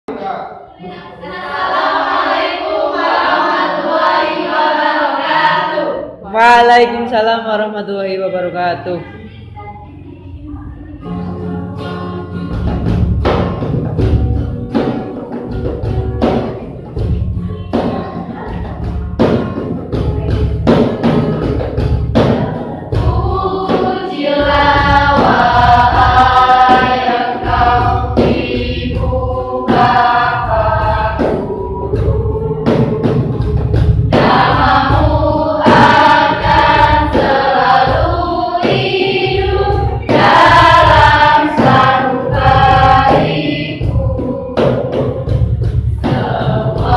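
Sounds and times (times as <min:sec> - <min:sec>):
steady-beat accompaniment: 0:00.1 - 0:46.9
school choir singing: 0:00.2 - 0:06.2, 0:22.2 - 0:46.9.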